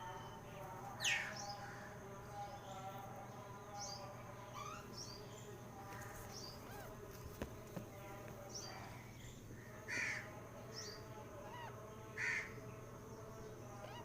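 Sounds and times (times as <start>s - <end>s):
faint high bird chirps: 0.0s - 1.7s, 3.7s - 7.8s, 13.7s - 14.0s
bird harsh caw-like calls: 9.6s - 10.3s, 11.4s - 12.6s.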